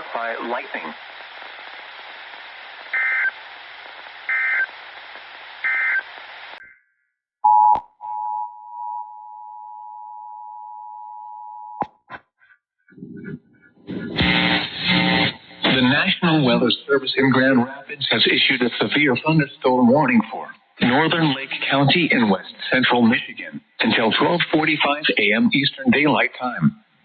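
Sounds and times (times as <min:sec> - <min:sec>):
radio static: 0:00.0 - 0:06.6, 0:12.9 - 0:26.7.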